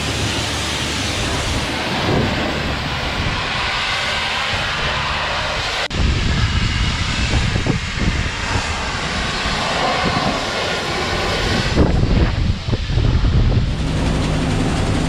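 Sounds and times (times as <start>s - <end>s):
farm machine running under load: 13.7s - 15.0s.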